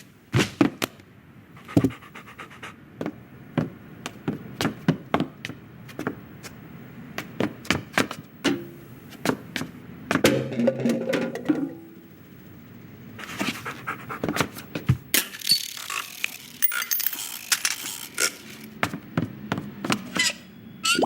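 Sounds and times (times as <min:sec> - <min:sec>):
breathy panting: 0:01.6 - 0:02.8.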